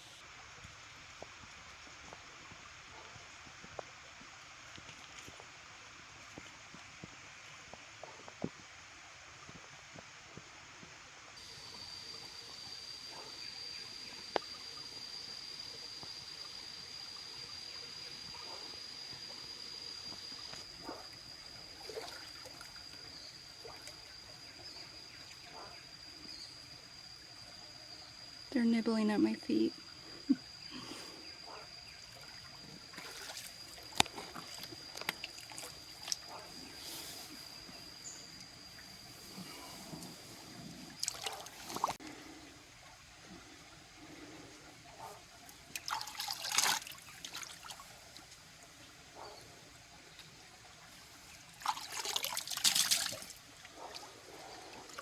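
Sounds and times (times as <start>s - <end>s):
waterfall pool trickling: 8.6s - 55.0s
high-pitched whine: 11.4s - 44.5s
high-pitched insect call: 11.4s - 55.0s
stream water running over rocks: 32.0s - 44.0s, 44.8s - 55.0s
sharp splashes: 32.2s - 36.4s, 41.0s - 42.0s, 45.7s - 47.9s, 51.5s - 53.4s.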